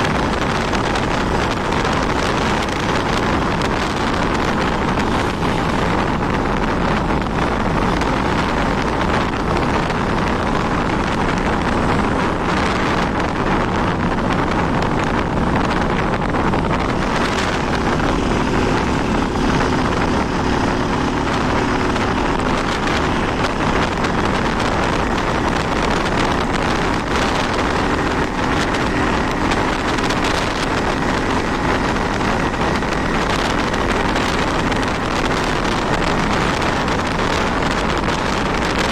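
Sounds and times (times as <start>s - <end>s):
motorcycle engine hum: 0.0s - 38.9s
wind rushing over microphone: 0.0s - 38.9s.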